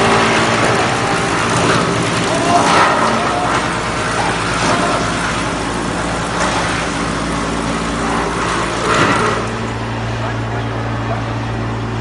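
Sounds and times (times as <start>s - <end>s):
wood chipper running: 0.0s - 12.0s.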